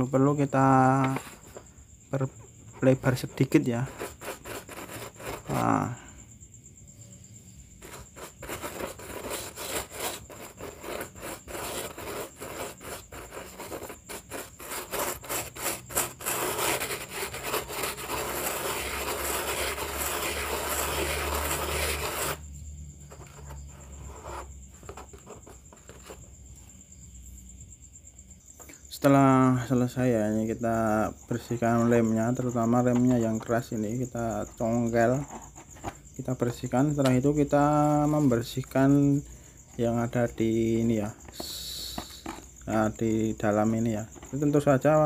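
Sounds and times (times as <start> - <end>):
cricket chirping: 0.0 - 45.0
hand scraping loudspeaker parts: 7.8 - 22.4, 31.8 - 39.0, 40.7 - 43.3.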